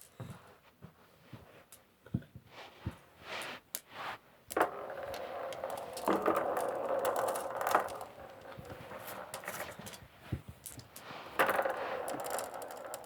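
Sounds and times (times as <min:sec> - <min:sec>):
glass marbles clicking and rattling: 0:05.0 - 0:10.0, 0:10.6 - 0:13.0.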